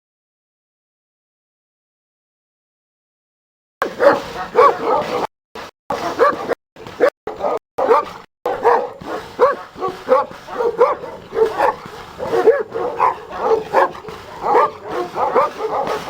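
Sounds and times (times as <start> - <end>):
dog barking: 3.8 - 5.3, 5.9 - 16.0.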